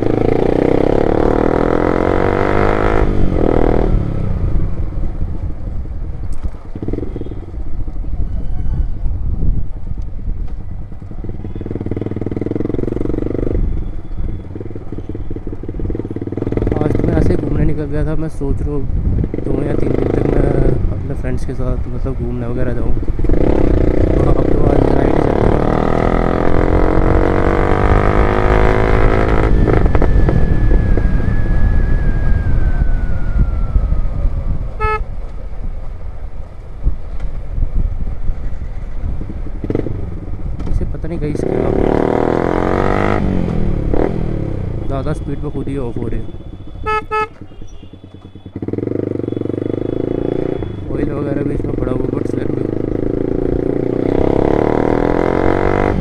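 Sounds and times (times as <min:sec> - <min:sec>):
motorcycle accelerating: 0:00.0 - 0:07.9, 0:09.8 - 0:56.0
wind noise: 0:00.0 - 0:48.0
horn toot: 0:34.8 - 0:35.1, 0:44.9 - 0:51.0
motorcycle exhaust pulsing: 0:41.5 - 0:56.0.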